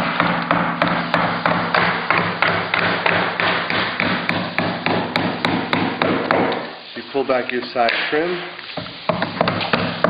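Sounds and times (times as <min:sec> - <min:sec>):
hammer driving nails: 0:00.0 - 0:06.7, 0:08.8 - 0:10.0.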